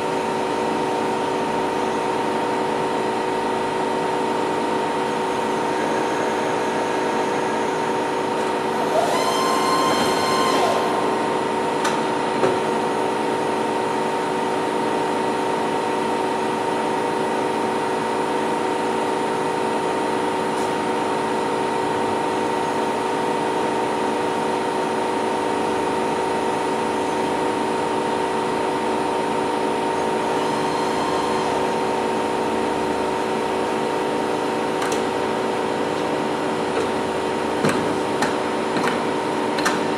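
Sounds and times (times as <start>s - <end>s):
milling machine humming: 0.0s - 39.9s
high whine: 4.8s - 14.4s, 26.6s - 37.6s.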